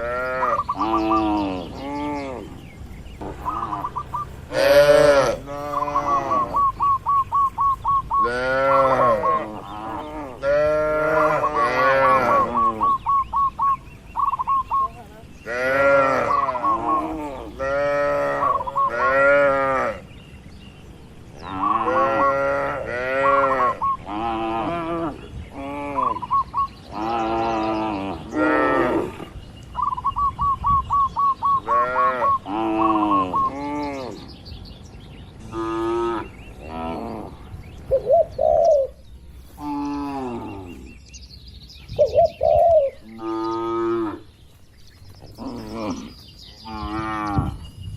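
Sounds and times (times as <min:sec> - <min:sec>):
cattle mooing: 0:04.5 - 0:06.8, 0:08.2 - 0:13.0, 0:15.5 - 0:20.0, 0:21.5 - 0:26.2.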